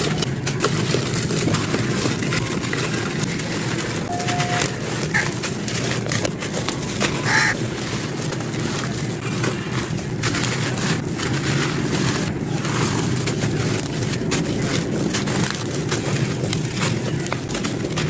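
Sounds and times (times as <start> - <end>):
sand-cement chunks crunching: 0.0 - 18.0
short tone: 4.1 - 4.8.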